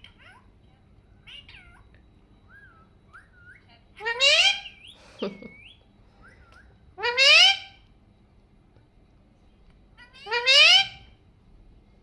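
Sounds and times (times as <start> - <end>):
parakeet chirps and whistles: 2.4 - 7.8, 10.1 - 11.2
parakeet loud rising call: 4.0 - 4.8, 7.0 - 7.8, 10.2 - 11.1.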